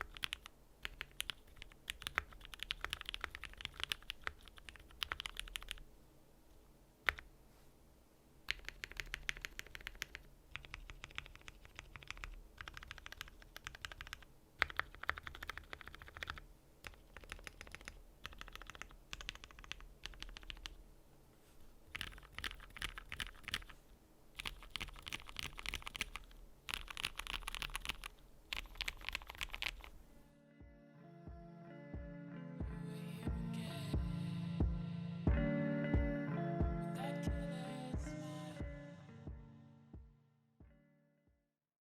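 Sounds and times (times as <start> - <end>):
mechanical keyboard typing clacks: 0.0 - 5.8, 8.5 - 20.8, 21.9 - 23.7, 24.4 - 29.9.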